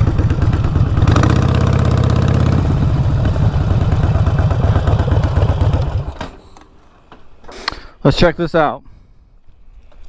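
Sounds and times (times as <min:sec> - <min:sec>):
motorcycle engine running loud: 0:00.0 - 0:06.2.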